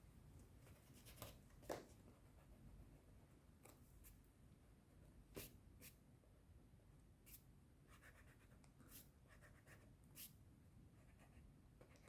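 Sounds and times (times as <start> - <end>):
colored pencil scratching on paper: 7.9 - 10.3.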